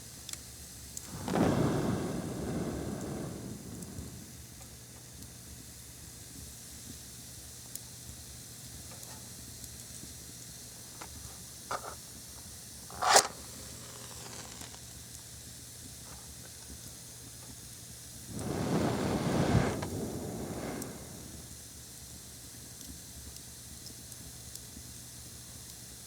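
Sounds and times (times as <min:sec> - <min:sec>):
faint steady hiss: 0:00.0 - 0:05.6, 0:18.2 - 0:23.0
match striking and flaring: 0:01.0 - 0:04.4, 0:12.8 - 0:15.0, 0:18.3 - 0:21.5.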